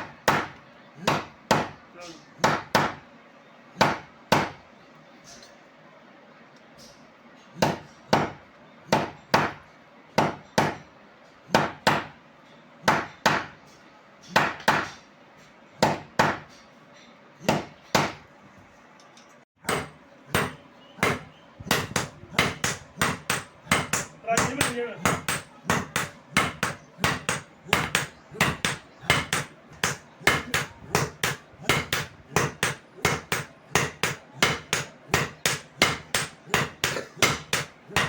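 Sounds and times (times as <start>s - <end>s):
hammer striking steel on anvil: 19.6s - 38.0s.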